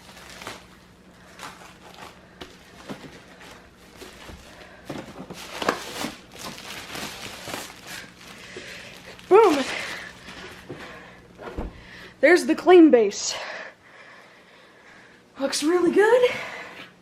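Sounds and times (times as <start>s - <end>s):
packing tape peeling off: 0.0s - 4.5s, 5.3s - 10.6s
cardboard packaging rustling: 0.0s - 11.0s.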